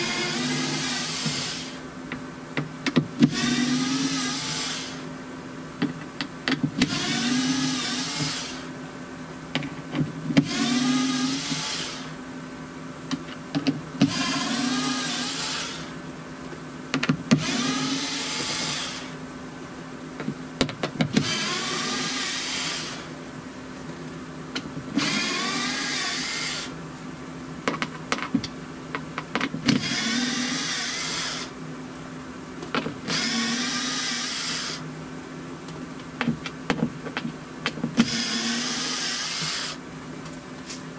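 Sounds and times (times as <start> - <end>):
small electric power tool: 0.0 - 1.8, 3.2 - 5.1, 6.8 - 8.7, 10.4 - 12.2, 14.0 - 16.0, 17.3 - 19.2, 21.1 - 23.2, 24.9 - 26.8, 29.6 - 31.6, 33.0 - 34.9, 38.0 - 39.8.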